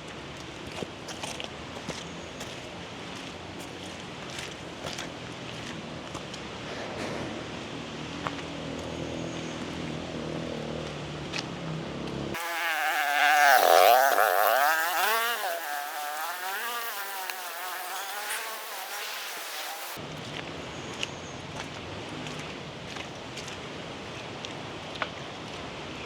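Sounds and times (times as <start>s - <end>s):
flying insect buzzing: 12.4s - 20.0s.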